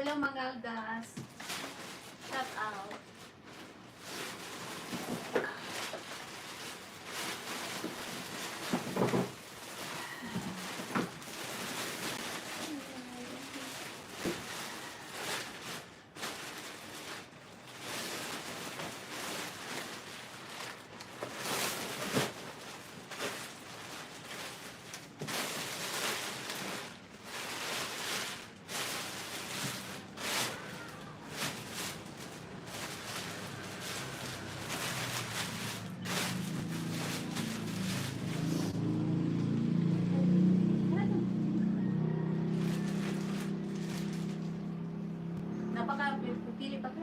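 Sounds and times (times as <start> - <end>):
rustling and scuffing: 1.1 - 39.0
engine hum: 28.3 - 47.0.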